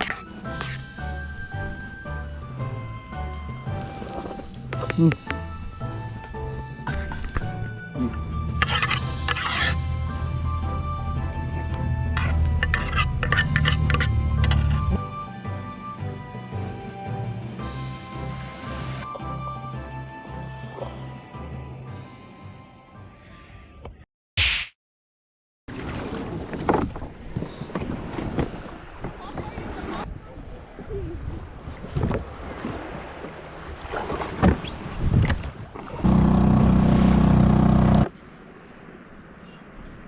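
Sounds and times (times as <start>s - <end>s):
background music with held tones: 0.0s - 23.3s
wind noise: 25.9s - 33.0s, 34.3s - 36.1s
repeating low bass: 36.0s - 38.1s
small outboard engine running: 36.0s - 38.1s.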